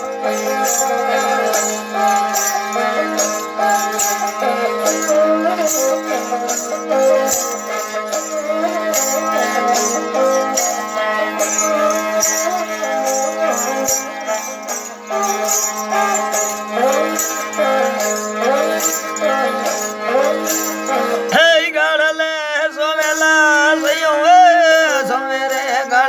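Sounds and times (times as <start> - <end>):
droning strings: 0.0 - 22.5
bowed fiddle melody: 0.0 - 26.0
jingling bells: 0.0 - 26.0.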